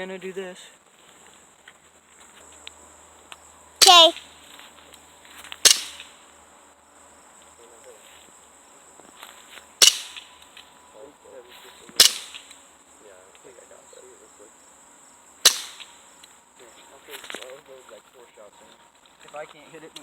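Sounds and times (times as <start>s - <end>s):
bb pistol shots: 5.6s - 6.1s, 9.8s - 10.3s, 12.0s - 12.5s, 15.5s - 15.9s.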